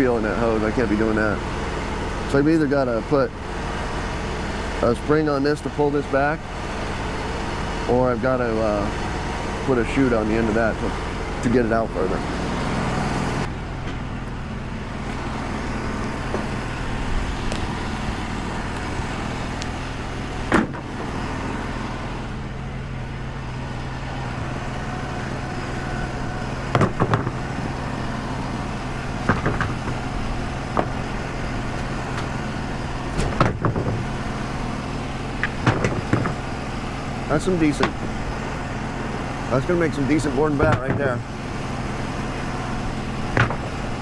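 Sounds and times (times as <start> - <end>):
sawmill engine droning: 0.0 - 44.0
sharp knocks: 20.5 - 21.1, 26.7 - 27.4, 29.2 - 30.0, 33.2 - 34.1, 35.4 - 36.5, 43.3 - 43.8.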